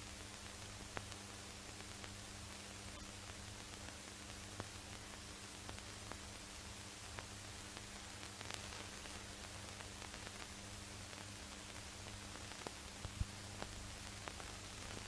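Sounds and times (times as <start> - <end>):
film soundtrack hiss: 0.0 - 15.0
low mains hum: 0.0 - 15.0
clicks and crackle: 11.1 - 15.0.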